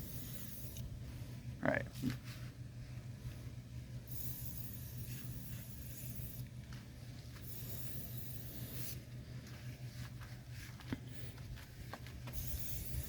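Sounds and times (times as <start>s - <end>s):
steady low hum: 0.0s - 13.0s
compressed air hissing: 7.5s - 9.0s.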